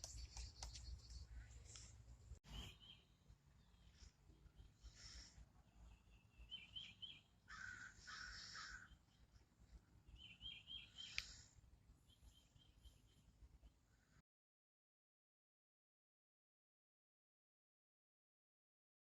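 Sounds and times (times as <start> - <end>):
crow cawing: 7.5 - 9.0.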